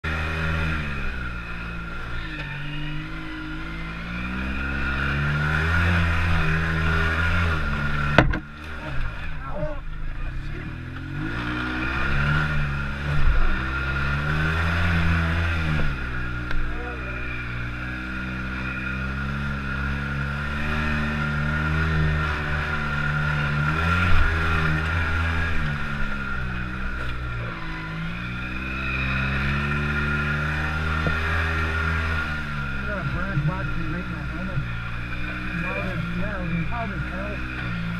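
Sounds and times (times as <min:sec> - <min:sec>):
engine running: 0:00.0 - 0:37.9
steady high whine: 0:15.0 - 0:37.9.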